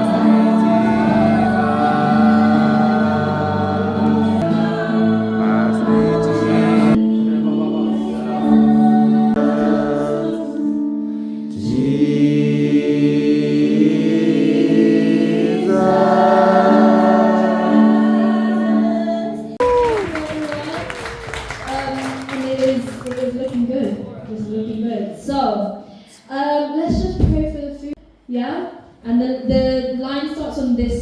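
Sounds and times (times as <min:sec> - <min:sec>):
voices singing worship song: 0:00.0 - 0:19.6.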